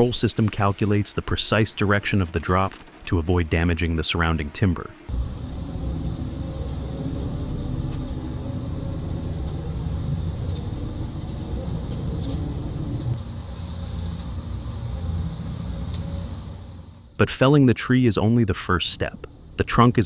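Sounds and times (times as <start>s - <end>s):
diesel engine rumbling: 5.1s - 17.2s.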